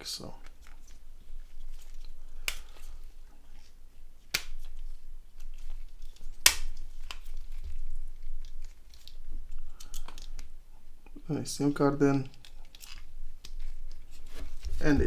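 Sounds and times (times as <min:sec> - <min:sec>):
plastic snaps: 0:01.7 - 0:03.0, 0:04.3 - 0:10.5.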